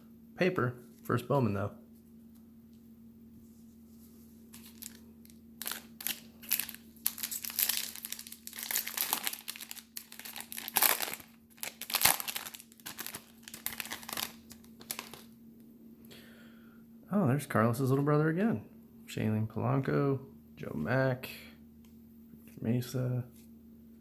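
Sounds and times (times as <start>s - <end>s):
foil wrapper crinkling and tearing: 4.5s - 15.3s.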